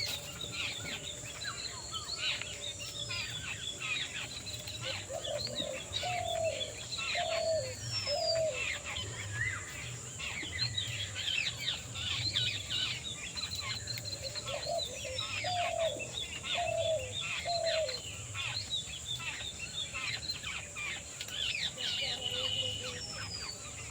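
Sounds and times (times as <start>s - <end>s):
small birds chirping chorus: 0.0s - 23.9s.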